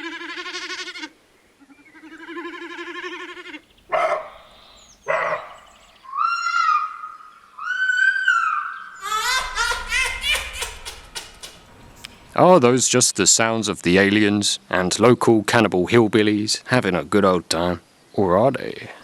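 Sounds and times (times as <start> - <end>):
wavering bleat-like animal calls: 0.0 - 3.7
high-pitched held animal calls: 0.0 - 12.2
short sharp animal barks: 3.9 - 4.5.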